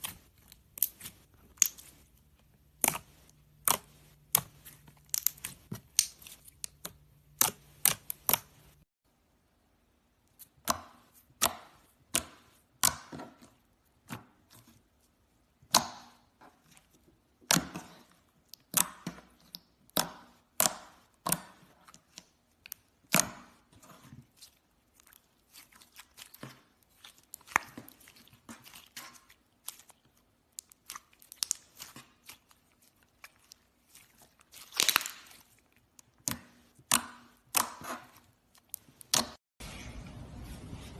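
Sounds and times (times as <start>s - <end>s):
slime clicking and popping: 0.8s - 2.0s, 3.6s - 8.5s, 34.6s - 37.9s.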